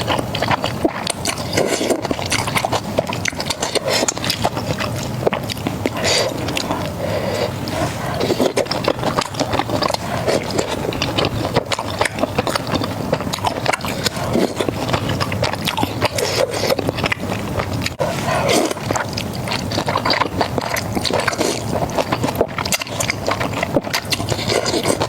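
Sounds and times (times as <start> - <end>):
chewing crispy fried food: 0.0 - 25.0
wet mouth sounds: 0.0 - 25.0.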